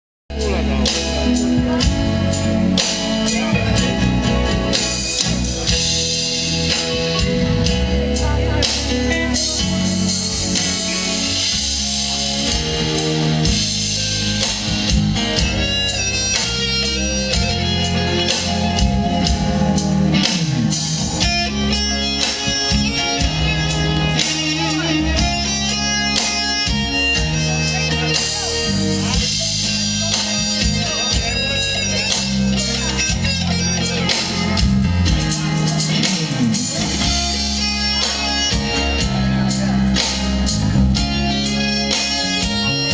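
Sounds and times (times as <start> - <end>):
electric guitar chords: 0.3 - 42.9
sustained bass notes: 0.3 - 42.9.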